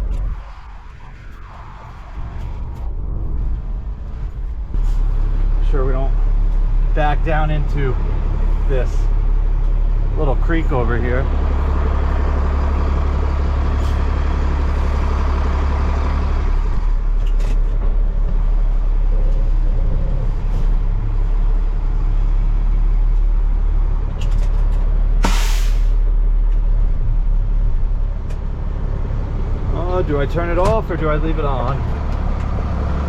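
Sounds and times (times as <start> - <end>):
truck diesel engine running: 3.4 - 33.0
air brake hiss: 25.2 - 26.1.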